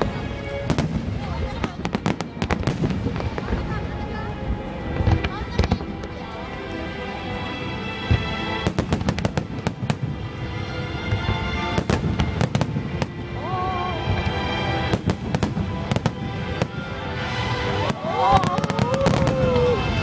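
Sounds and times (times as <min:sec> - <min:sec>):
fireworks bangs and crackles: 0:00.0 - 0:20.0
music playing: 0:00.0 - 0:20.0.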